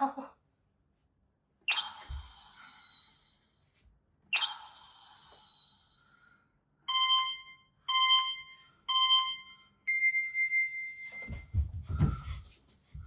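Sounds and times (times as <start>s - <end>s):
countdown beeps: 1.7s - 3.4s, 4.4s - 6.1s, 6.9s - 11.1s
high electronic chime: 1.7s - 3.6s, 4.4s - 6.3s.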